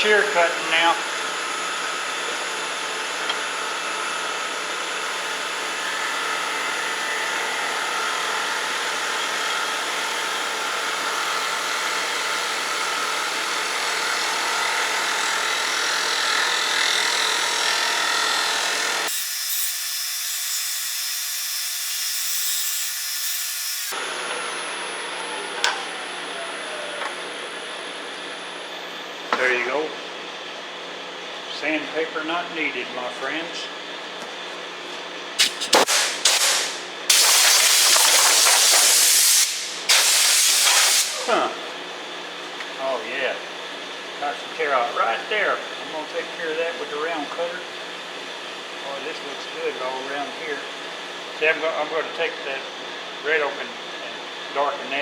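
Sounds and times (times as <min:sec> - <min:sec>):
lathe hum: 0:00.0 - 0:20.2
turning tool hissing on wood: 0:35.4 - 0:41.4.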